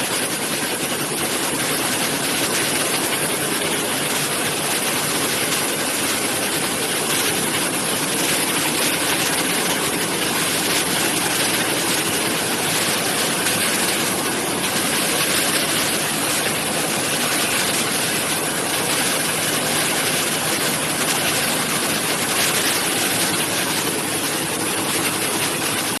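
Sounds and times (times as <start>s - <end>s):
weaving loom running: 0.0s - 26.0s.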